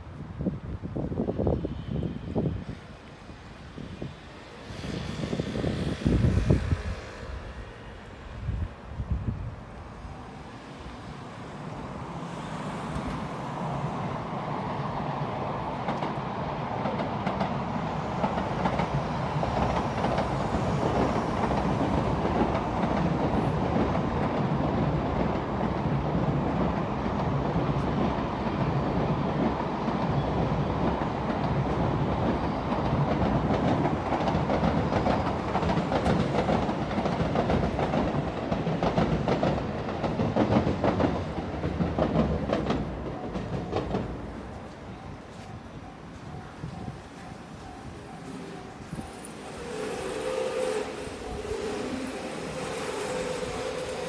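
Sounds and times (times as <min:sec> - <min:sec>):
train wheels clattering on rails: 0:14.8 - 0:54.0.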